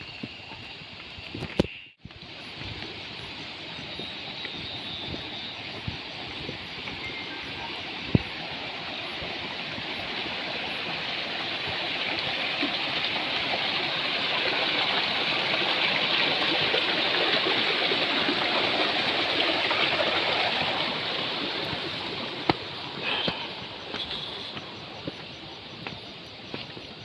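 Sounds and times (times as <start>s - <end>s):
rushing stream water: 2.1s - 27.0s.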